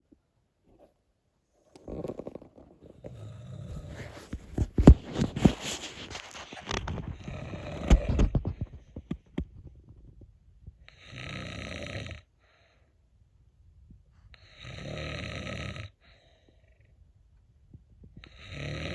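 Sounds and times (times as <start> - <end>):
cat snoring: 2.9 - 4.6, 7.0 - 8.7, 10.9 - 12.3, 14.4 - 16.1, 18.2 - 18.9.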